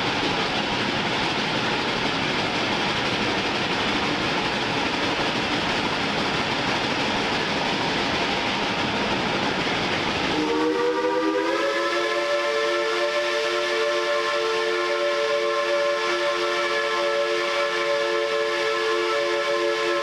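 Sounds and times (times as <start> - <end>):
steam locomotive working: 0.0 - 20.0
steam whistle chord: 10.3 - 20.0.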